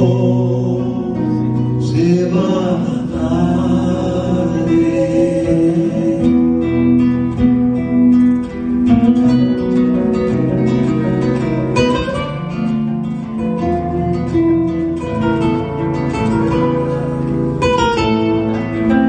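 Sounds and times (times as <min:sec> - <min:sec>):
person singing: 0:00.0 - 0:06.8
acoustic guitar: 0:00.0 - 0:19.0.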